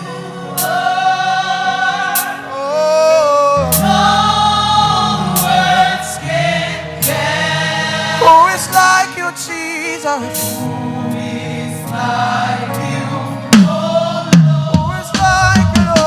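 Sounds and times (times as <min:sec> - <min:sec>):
gospel choir singing: 0:00.0 - 0:16.0
deep bass: 0:03.6 - 0:06.8
drum or cymbal hits: 0:13.6 - 0:16.0.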